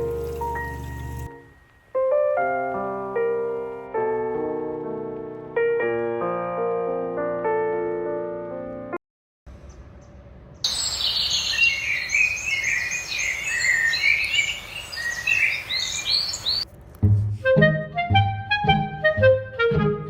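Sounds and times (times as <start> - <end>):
background hiss: 0.0 - 4.0, 10.6 - 16.9
piano music: 0.0 - 9.0, 17.4 - 20.0
small birds chirping and trilling: 9.6 - 16.6.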